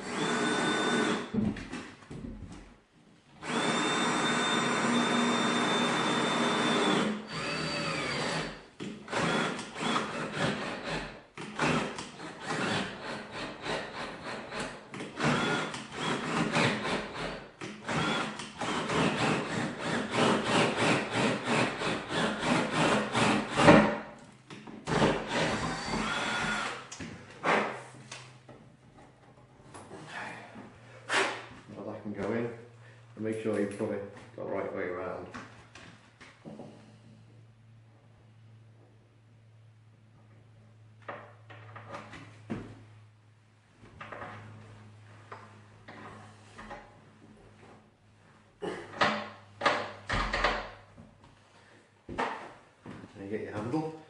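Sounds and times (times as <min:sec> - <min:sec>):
power drill whining: 0:00.0 - 0:01.4, 0:03.4 - 0:23.8, 0:24.9 - 0:26.9.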